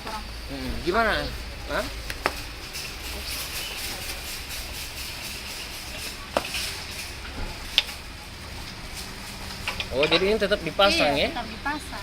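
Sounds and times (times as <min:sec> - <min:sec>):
laminating machine hissing: 0:00.0 - 0:12.0.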